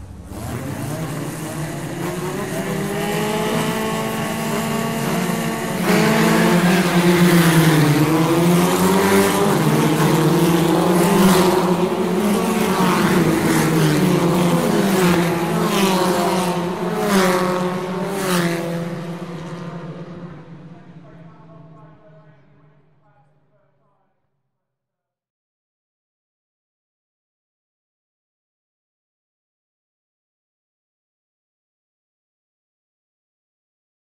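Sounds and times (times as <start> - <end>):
racing engines revving: 0.0 - 23.0.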